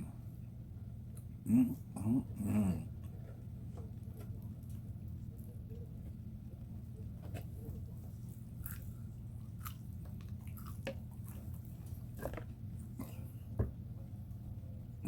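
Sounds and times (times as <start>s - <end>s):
steady low hum: 0.0s - 15.0s
person chewing crispy chicken: 7.2s - 13.3s.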